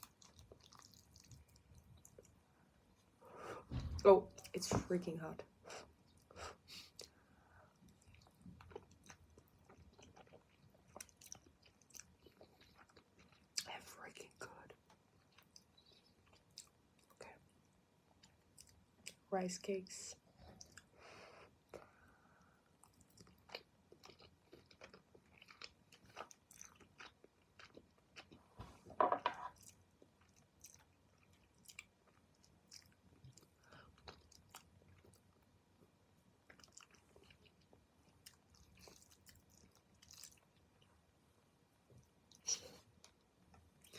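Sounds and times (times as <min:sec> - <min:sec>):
close chewing mouth sounds: 0:00.0 - 0:03.1, 0:06.1 - 0:17.3, 0:18.1 - 0:19.2, 0:20.4 - 0:21.0, 0:22.7 - 0:28.4, 0:29.5 - 0:35.4, 0:36.4 - 0:41.0.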